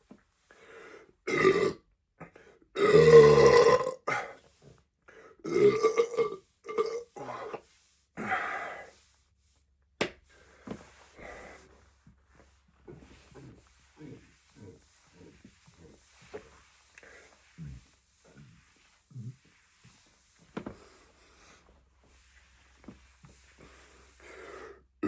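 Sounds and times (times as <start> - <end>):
person belching: 1.3 - 1.8, 2.8 - 4.4, 5.5 - 7.5.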